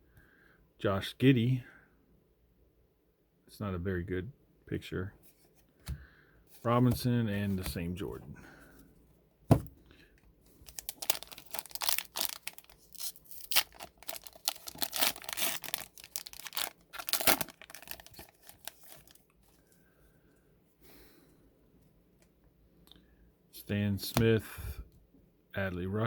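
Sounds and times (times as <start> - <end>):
wrapper tearing and crinkling: 10.6 - 19.3.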